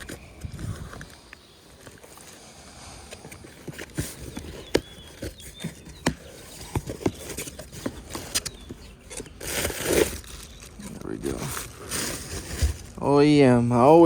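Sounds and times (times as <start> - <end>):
clicks and knocks of unpacking: 3.3 - 12.9.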